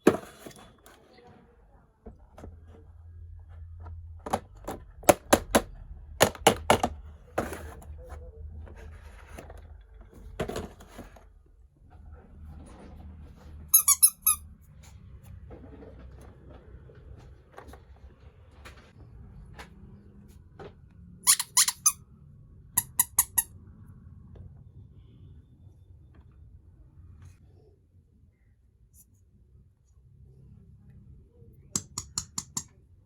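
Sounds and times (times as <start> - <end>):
short high squeaks: 13.8 - 14.4
toy pieces clicking and tapping: 31.8 - 32.8.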